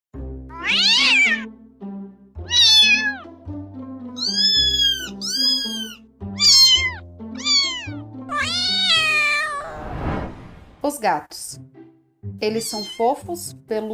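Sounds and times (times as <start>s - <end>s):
soft background music: 0.2s - 9.8s, 10.4s - 13.9s
cat meowing: 0.5s - 1.5s, 2.4s - 3.3s, 4.2s - 9.8s, 12.6s - 13.2s.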